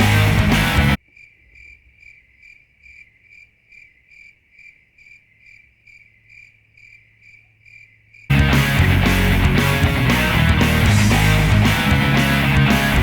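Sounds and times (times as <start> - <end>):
rock music with heavy guitars: 0.0 - 1.0, 8.3 - 13.0
cricket chirping: 1.0 - 8.3.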